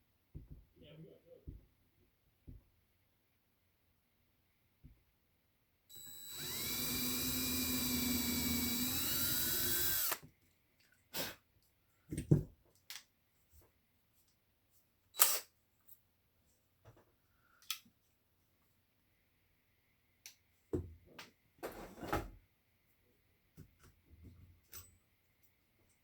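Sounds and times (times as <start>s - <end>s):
electric drill whining: 5.9s - 10.2s.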